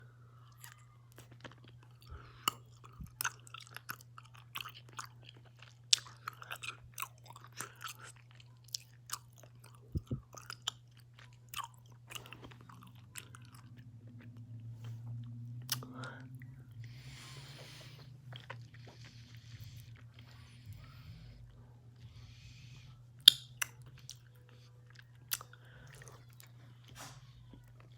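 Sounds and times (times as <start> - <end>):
steady low hum: 0.0 - 27.9
wet chewing clicks and smacks: 0.5 - 17.0, 18.2 - 21.0, 23.2 - 26.6
heavy breathing: 15.8 - 23.2.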